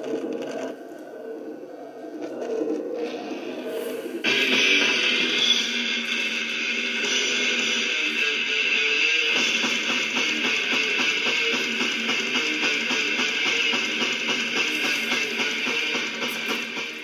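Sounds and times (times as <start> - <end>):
guitar song on record player: 3.3 - 17.0.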